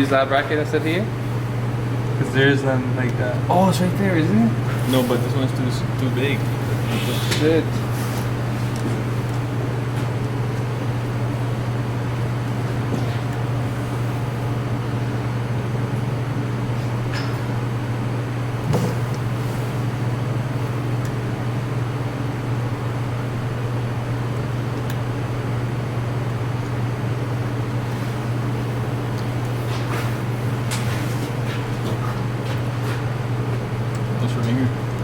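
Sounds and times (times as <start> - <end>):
low mechanical hum: 0.0 - 35.0.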